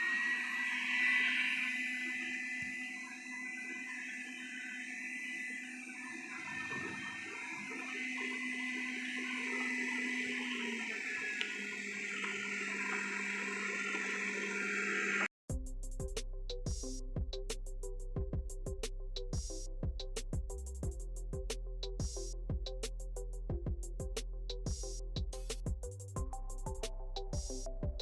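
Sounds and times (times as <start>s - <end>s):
high thin whine: 0.0s - 15.3s
robot vacuum whirring: 0.0s - 15.3s.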